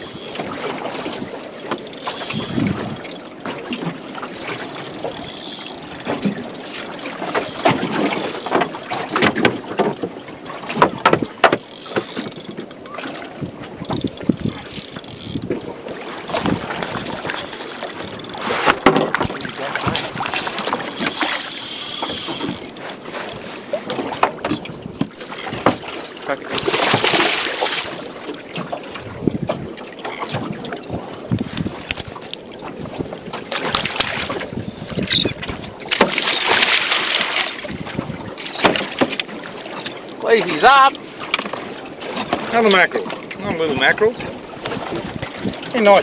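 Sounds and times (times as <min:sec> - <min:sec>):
water slapping against hull: 0:00.0 - 0:46.0
wind on microphone: 0:02.2 - 0:10.1, 0:12.0 - 0:21.3, 0:22.0 - 0:27.2, 0:27.8 - 0:36.7, 0:37.4 - 0:39.1, 0:43.3 - 0:46.0.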